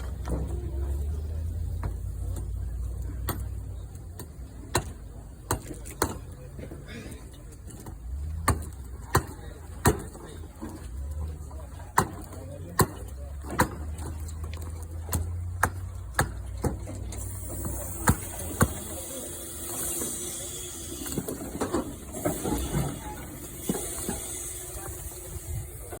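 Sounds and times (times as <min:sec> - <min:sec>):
low engine rumble: 0:00.0 - 0:26.0
steam hissing: 0:17.2 - 0:26.0.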